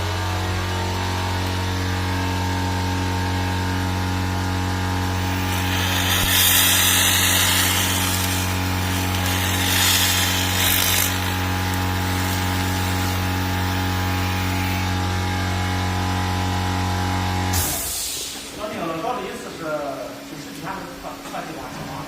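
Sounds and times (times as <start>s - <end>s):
laser machine electrical hum: 0.0s - 18.1s
laser cleaning crackling hiss: 5.3s - 13.4s.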